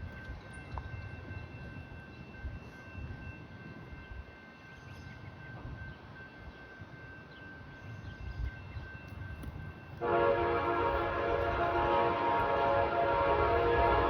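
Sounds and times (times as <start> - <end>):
train horn blasting: 10.0 - 14.0.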